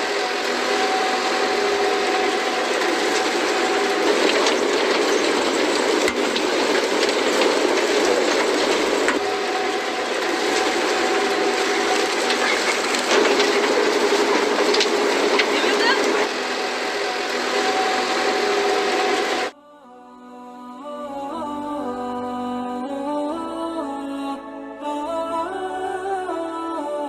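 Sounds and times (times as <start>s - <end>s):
engine running: 0.0s - 19.5s
machinery rattling: 0.0s - 19.5s.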